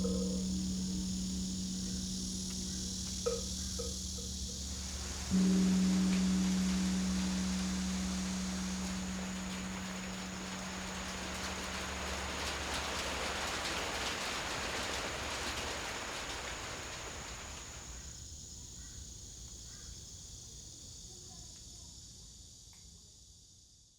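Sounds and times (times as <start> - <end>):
temple bell humming: 0.0 - 17.7
faint chirps: 0.0 - 17.9
steady hiss: 0.0 - 18.5.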